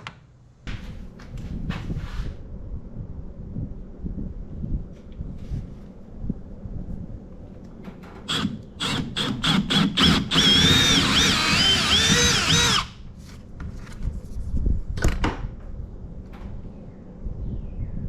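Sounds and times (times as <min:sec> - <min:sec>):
power drill whining: 0:08.3 - 0:13.0.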